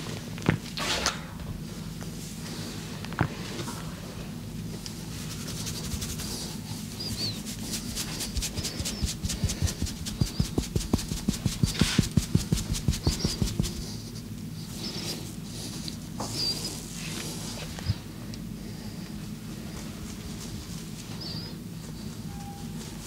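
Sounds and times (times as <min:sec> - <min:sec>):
hands slapping body in massage: 0:08.0 - 0:14.0.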